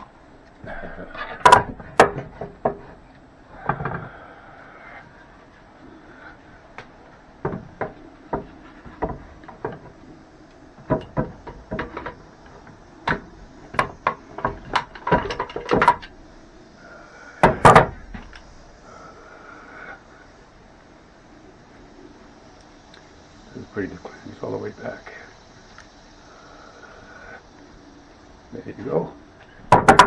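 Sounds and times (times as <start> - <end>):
wooden boards knocking: 1.2 - 3.0, 7.4 - 10.0, 10.8 - 16.1, 17.4 - 18.3, 29.7 - 30.0.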